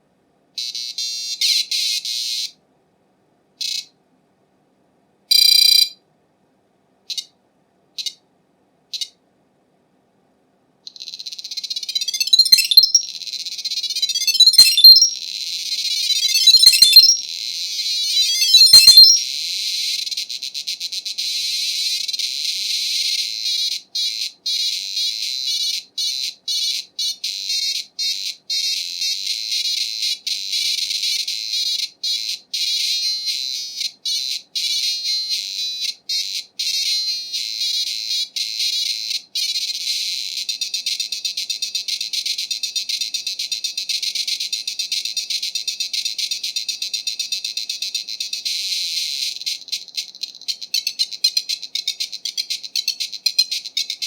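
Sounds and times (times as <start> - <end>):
buzzy beeping computer tune: 12.0 - 13.1, 14.0 - 15.2, 16.2 - 17.2, 18.2 - 19.2.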